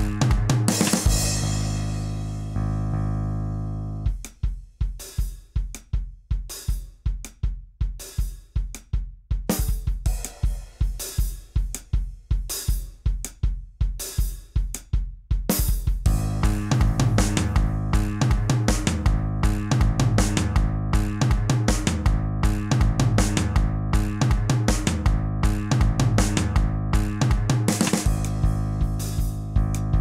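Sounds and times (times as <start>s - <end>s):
fast drum beat with hi-hat: 0.0s - 2.6s, 4.1s - 30.0s
low bass note: 1.2s - 4.1s, 28.1s - 30.0s.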